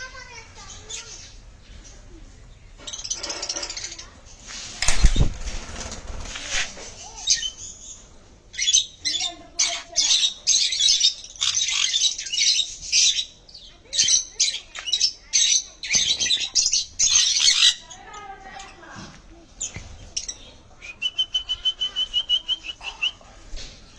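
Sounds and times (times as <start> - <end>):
parrot squawking: 8.6 - 13.2.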